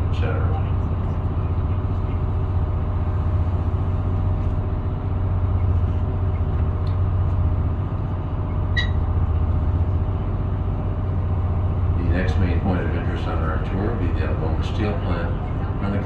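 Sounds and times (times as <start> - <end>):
boat engine drone: 0.0 - 16.0
faint high squeak: 8.7 - 9.0.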